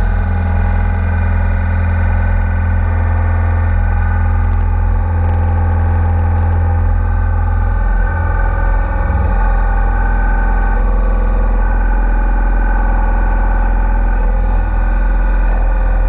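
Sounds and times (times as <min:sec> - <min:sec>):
distorted electric guitar: 0:00.0 - 0:16.0
heavy bass: 0:00.0 - 0:16.0.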